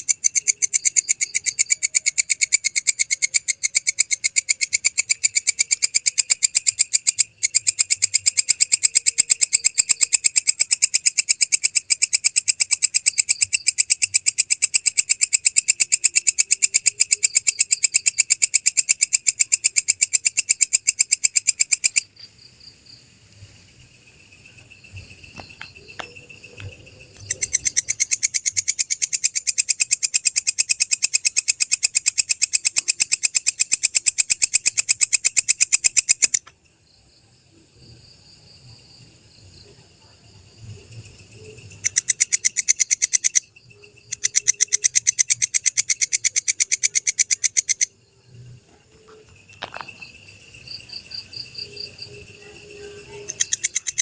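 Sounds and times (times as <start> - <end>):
katydid clicking: 0.0 - 22.2, 24.6 - 36.6, 41.5 - 48.1, 53.0 - 54.0.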